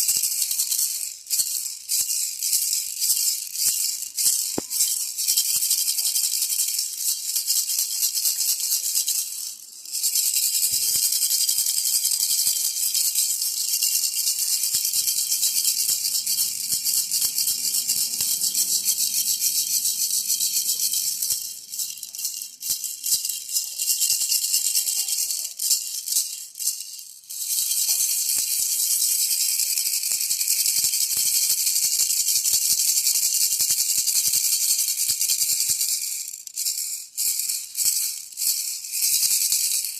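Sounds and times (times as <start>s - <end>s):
baby rattle shaken: 0.0s - 39.9s.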